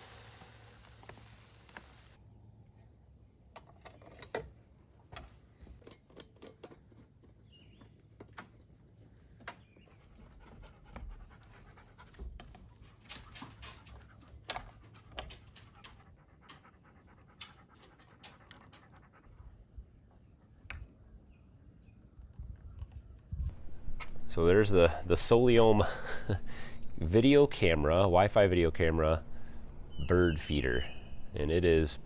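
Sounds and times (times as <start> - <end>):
dog panting: 10.2 - 14.1, 15.3 - 19.6.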